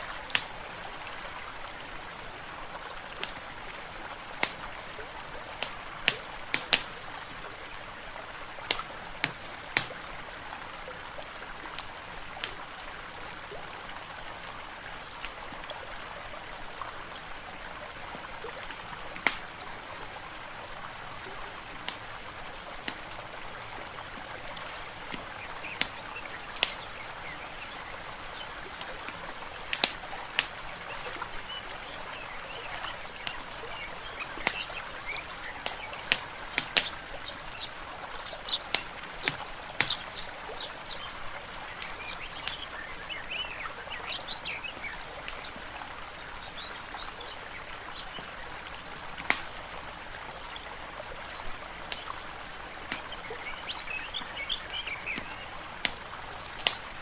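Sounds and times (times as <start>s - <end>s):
water rushing: 0.0s - 57.0s
small birds chirping: 24.3s - 48.6s, 52.9s - 55.7s
wood fire crackling and popping: 24.5s - 26.9s, 28.7s - 31.3s, 34.2s - 37.0s, 38.6s - 40.0s.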